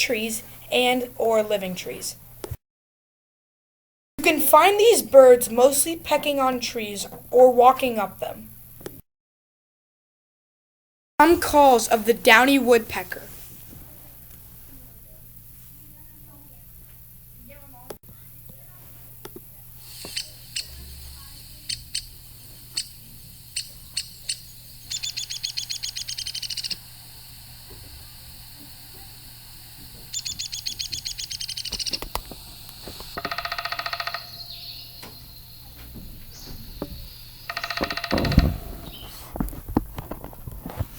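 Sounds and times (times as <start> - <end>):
sharp pik notes: 19.2 - 36.0
lower-pitched rattling calls: 19.8 - 39.2
woodpecker calls: 19.8 - 39.2
high rattled whinnies: 19.9 - 32.1.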